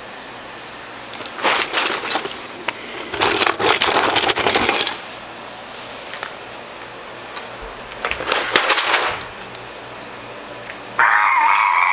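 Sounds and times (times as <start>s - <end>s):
dense crunching and crackling: 1.0s - 5.2s, 7.4s - 9.6s.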